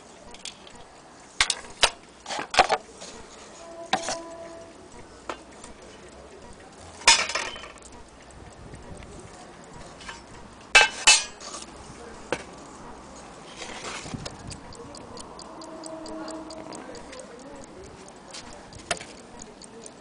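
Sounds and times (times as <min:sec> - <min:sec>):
clock ticking: 0:00.0 - 0:02.2, 0:02.8 - 0:20.0.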